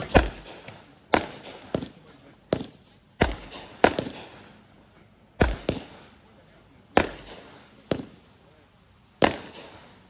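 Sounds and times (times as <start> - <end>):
fireworks bangs: 0.0 - 4.6, 5.4 - 6.2, 6.9 - 8.3, 9.2 - 10.0.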